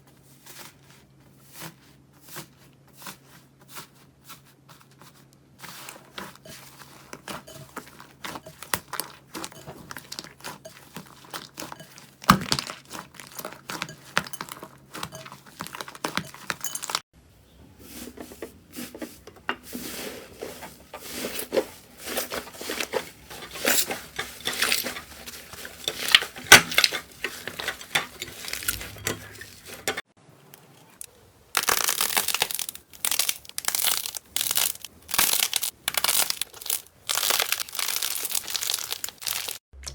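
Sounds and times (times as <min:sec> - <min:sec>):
slime squeezed and stretched: 0:31.6 - 0:39.9.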